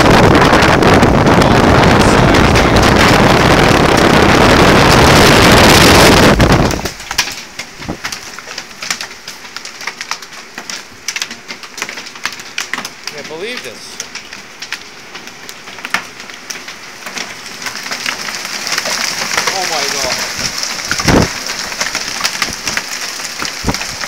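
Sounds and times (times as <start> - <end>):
wind buffeting microphone: 0.0 - 7.2, 20.3 - 22.8, 23.6 - 24.0
wind and heavy rain roar: 0.0 - 24.0.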